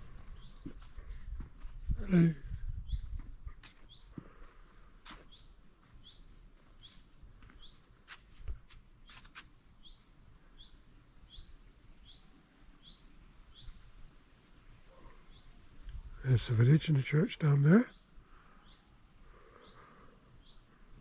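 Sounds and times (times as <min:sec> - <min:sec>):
small bird chirping: 0:02.8 - 0:04.2, 0:05.3 - 0:07.9, 0:09.0 - 0:15.6, 0:19.5 - 0:20.8.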